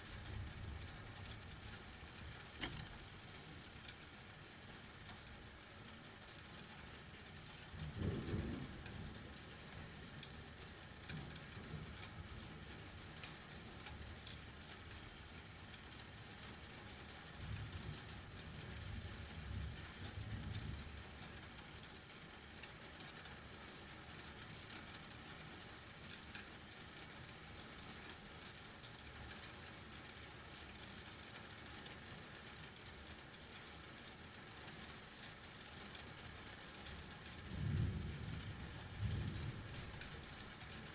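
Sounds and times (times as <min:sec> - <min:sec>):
steady rain: 0:00.0 - 0:40.9
low thunder rumbles: 0:07.8 - 0:09.7, 0:37.4 - 0:40.4.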